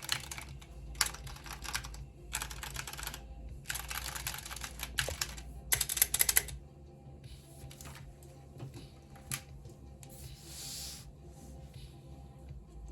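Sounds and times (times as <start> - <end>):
typing on mechanical keyboard: 0.0 - 6.6.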